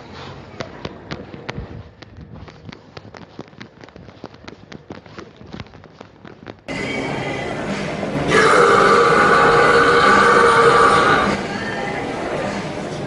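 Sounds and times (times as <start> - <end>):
sharp crackles and clicks: 0.6 - 6.7.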